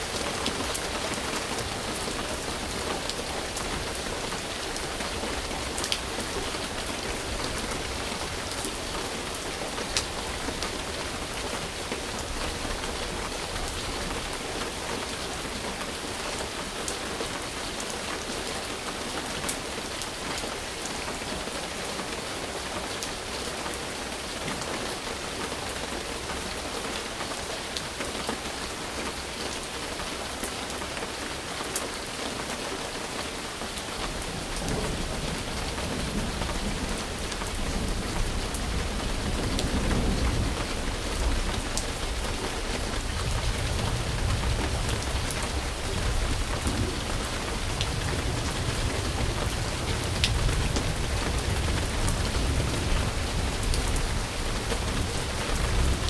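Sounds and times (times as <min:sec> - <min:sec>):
heavy rain falling: 0:00.0 - 0:56.0
thunder rumbling: 0:34.2 - 0:56.0.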